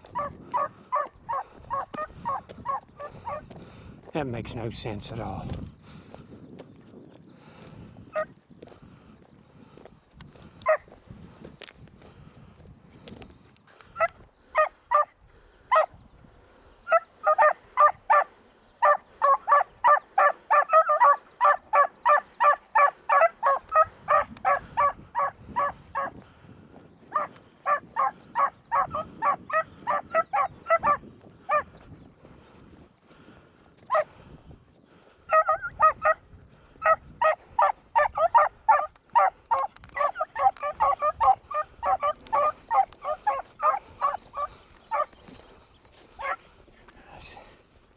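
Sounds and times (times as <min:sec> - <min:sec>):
hounds baying: 0:00.0 - 0:03.6, 0:08.1 - 0:08.4, 0:10.6 - 0:11.0, 0:13.9 - 0:16.0, 0:16.8 - 0:26.2, 0:27.0 - 0:31.8, 0:33.8 - 0:34.2, 0:35.3 - 0:46.7.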